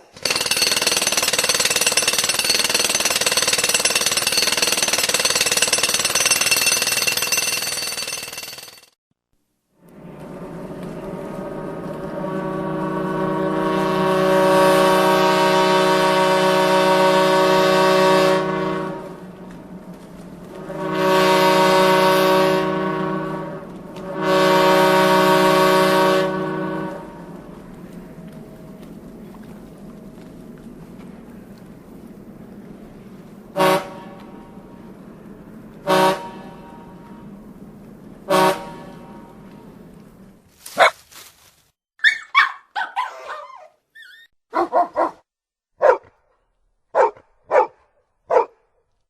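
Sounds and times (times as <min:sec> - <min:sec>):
jackhammer hammering: 0:00.0 - 0:09.0
truck air horn blasts: 0:11.1 - 0:19.5, 0:20.5 - 0:27.6, 0:33.5 - 0:34.8, 0:35.8 - 0:37.4, 0:38.2 - 0:39.7.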